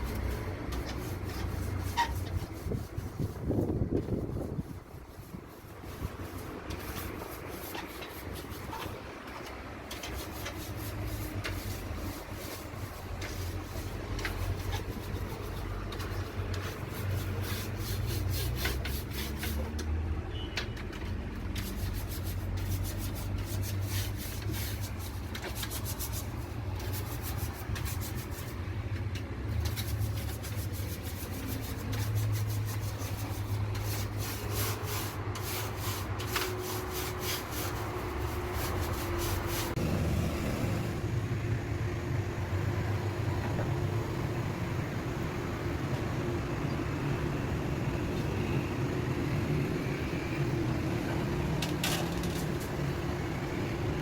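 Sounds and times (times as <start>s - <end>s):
rubbing or scraping strokes: 0.0s - 19.8s, 21.4s - 39.8s.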